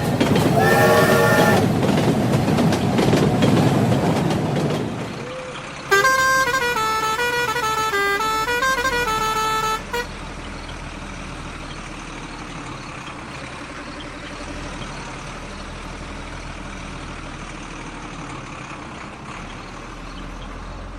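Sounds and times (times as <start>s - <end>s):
engine running drone: 0.0s - 2.7s
melodic horn tune: 5.9s - 10.1s.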